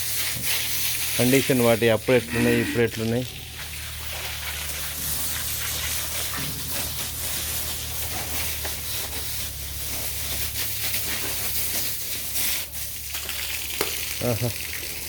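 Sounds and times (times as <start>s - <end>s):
water spraying: 0.0s - 15.0s.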